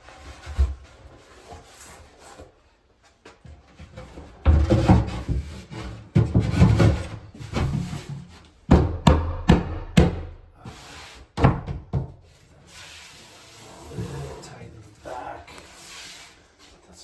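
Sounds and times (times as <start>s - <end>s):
wooden knocks and thuds: 4.4s - 10.5s, 11.4s - 12.2s
wood scraping against wood: 4.7s - 8.6s, 12.3s - 16.9s.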